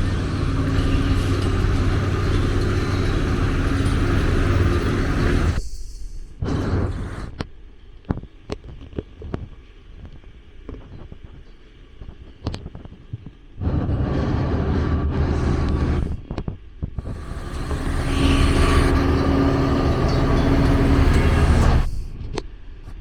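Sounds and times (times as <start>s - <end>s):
traffic noise: 0.0s - 5.6s, 17.0s - 22.1s
vehicle engine running: 0.0s - 5.6s, 13.6s - 16.3s, 17.0s - 22.2s.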